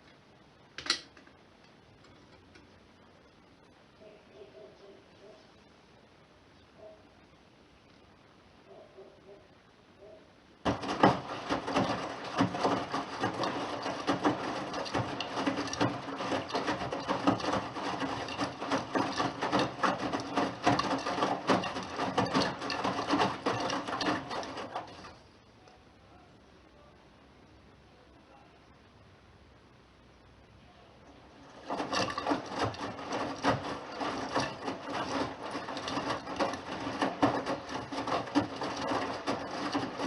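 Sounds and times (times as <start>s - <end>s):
laundry tumbling and knocking: 10.6s - 25.2s, 31.4s - 40.0s
washing machine drum turning: 10.6s - 25.2s, 31.4s - 40.0s.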